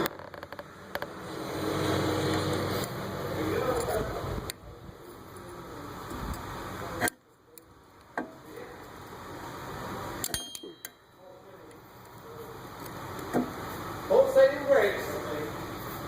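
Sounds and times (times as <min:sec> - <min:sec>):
steel tools clinking on metal: 0:10.2 - 0:11.0.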